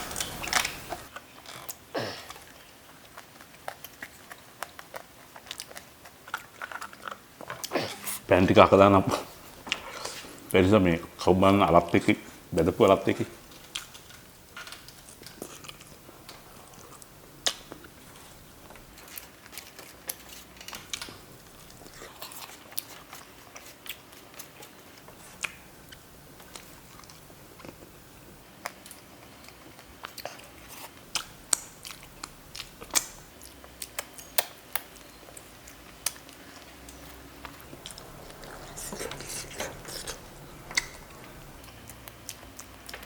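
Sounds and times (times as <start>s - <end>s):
person chewing food: 0.0s - 8.3s, 13.4s - 43.0s
wet mouth clicks and smacks: 37.8s - 41.0s.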